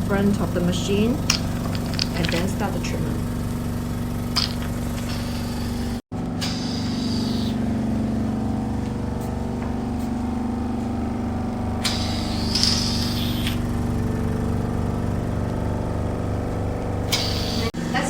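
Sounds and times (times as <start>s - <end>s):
suction pump humming: 0.0s - 18.0s
air hissing through handpiece: 4.4s - 7.6s, 11.8s - 13.6s, 17.1s - 17.8s.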